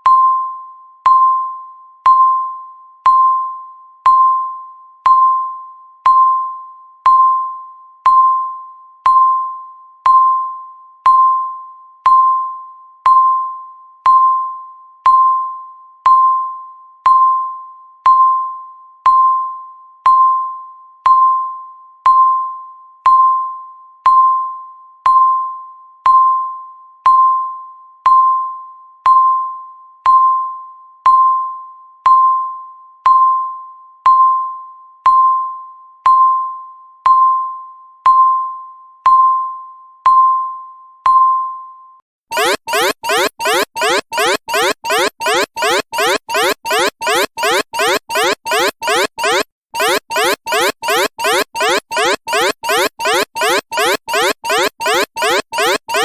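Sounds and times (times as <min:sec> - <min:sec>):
timer ding: 0:42.3 - 0:56.0.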